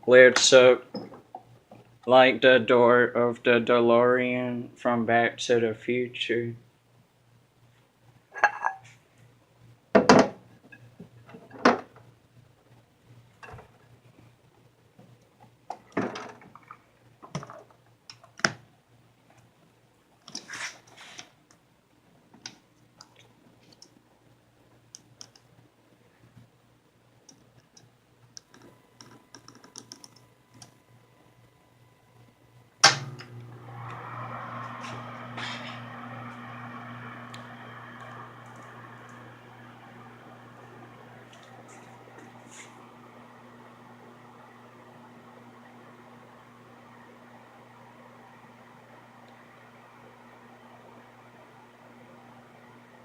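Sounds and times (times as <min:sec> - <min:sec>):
microwave oven clicks and knocks: 0:32.8 - 0:33.3.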